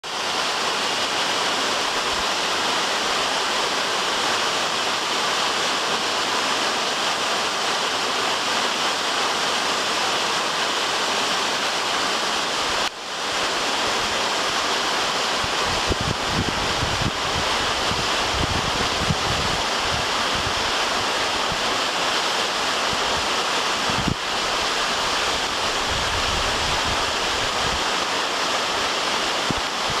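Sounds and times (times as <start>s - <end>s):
waterfall pouring: 0.0s - 30.0s
wind buffeting microphone: 15.5s - 20.7s, 23.8s - 24.2s, 25.6s - 27.8s.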